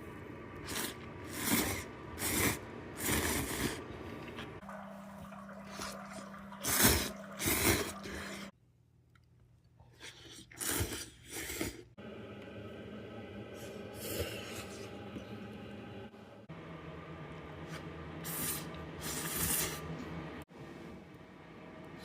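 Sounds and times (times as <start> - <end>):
low steady hum: 0.0 - 9.9, 12.0 - 22.0
person slurping noodles: 0.6 - 3.9, 6.6 - 8.5, 10.0 - 11.9, 13.6 - 15.0, 18.2 - 19.9.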